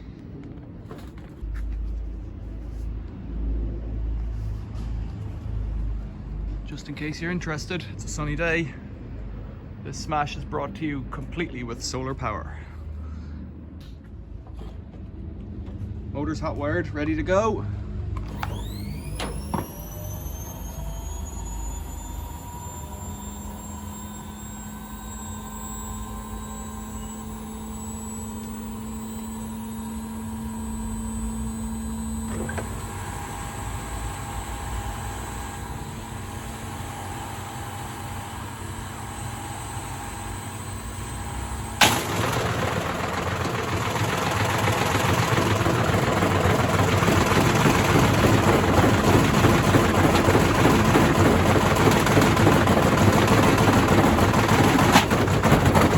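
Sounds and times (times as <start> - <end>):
washing machine motor hum: 18.2 - 55.9
sharp crack: 41.8 - 42.4.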